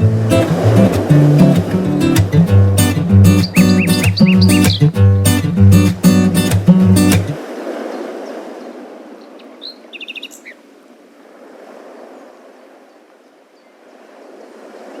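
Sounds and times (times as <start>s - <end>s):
small birds chirping: 2.9s - 5.4s, 8.2s - 10.6s.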